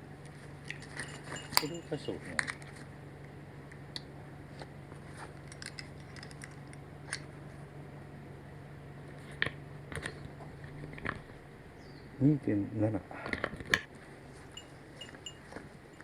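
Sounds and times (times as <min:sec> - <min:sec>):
low steady hum: 0:00.0 - 0:12.2.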